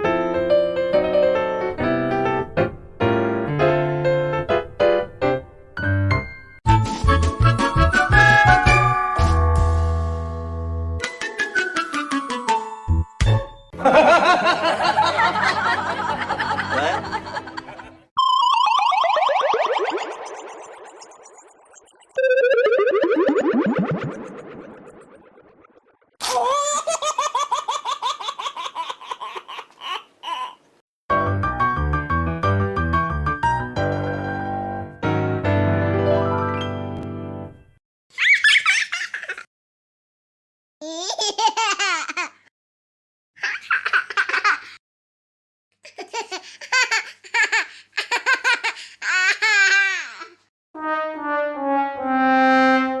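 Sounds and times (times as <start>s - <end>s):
piano music: 0.0s - 9.9s, 31.1s - 37.8s
people laughing: 13.8s - 18.0s
high-pitched laughing: 38.2s - 39.5s.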